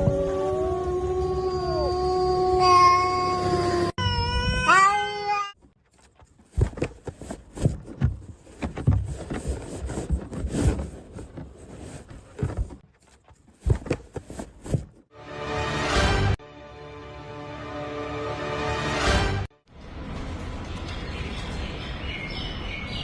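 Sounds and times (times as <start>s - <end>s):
cat meowing and yowling: 0.0s - 5.6s
knocks thumps and rustling: 5.7s - 15.0s.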